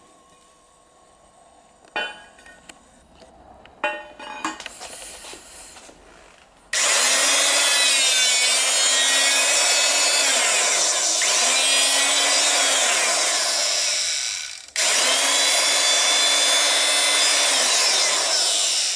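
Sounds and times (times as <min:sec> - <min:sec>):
hydraulic pump whining: 0:06.7 - 0:18.9.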